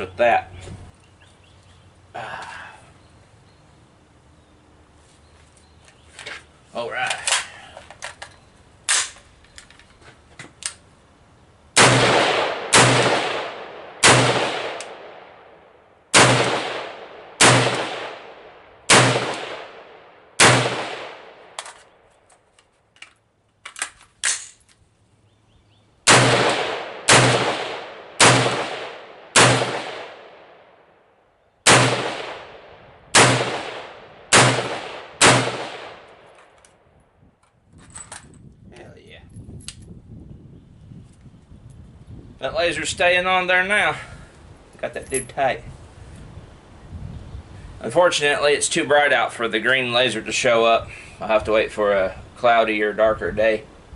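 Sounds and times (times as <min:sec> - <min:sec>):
rifle single shots echoing: 0:11.8 - 0:21.8, 0:26.1 - 0:30.8, 0:31.6 - 0:36.4.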